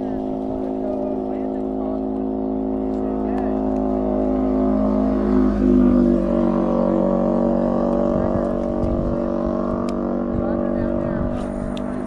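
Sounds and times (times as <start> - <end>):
boat motor running: 0.0 - 12.0.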